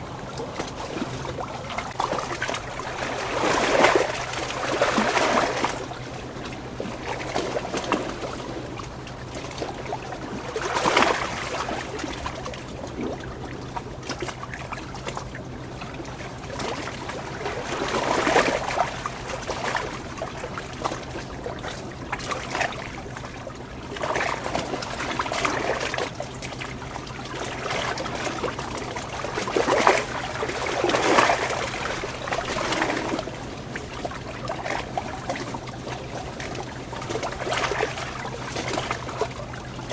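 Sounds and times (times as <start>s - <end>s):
water splashing: 23.9s - 39.9s.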